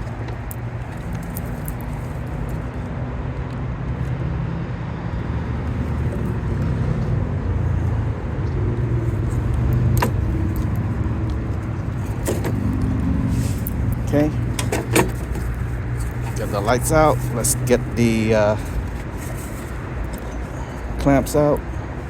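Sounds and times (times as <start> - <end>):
vehicle engine running: 5.2 - 22.0.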